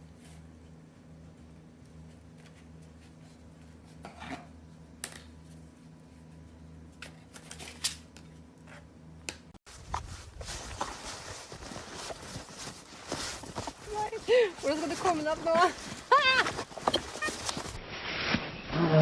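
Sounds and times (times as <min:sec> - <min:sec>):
rustles: 0:09.7 - 0:19.0.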